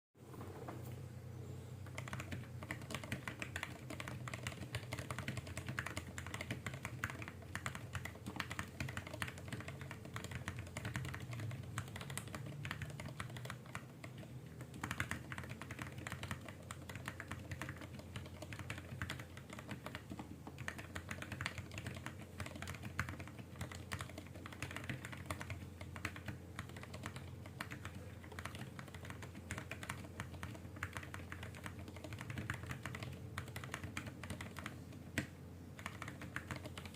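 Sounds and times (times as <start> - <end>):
fast typing on mechanical keyboard: 1.8 - 36.9.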